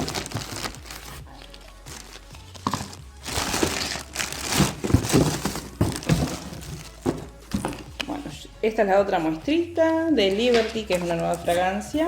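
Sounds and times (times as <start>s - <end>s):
packaging crinkling: 0.0s - 7.7s.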